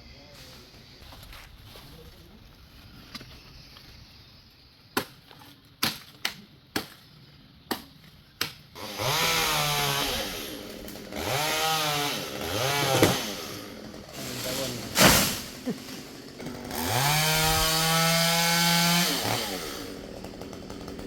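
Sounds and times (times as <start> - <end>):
chainsaw engine revving: 8.8 - 21.0.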